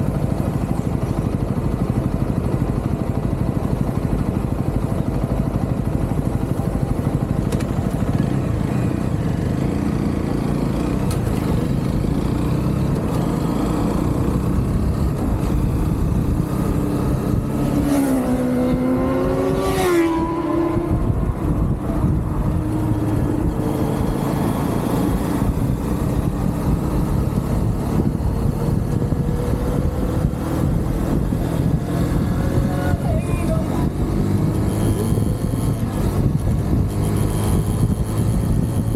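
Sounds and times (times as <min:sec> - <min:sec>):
motorcycle engine running: 0:00.0 - 0:38.9
road and wind noise: 0:00.0 - 0:38.9.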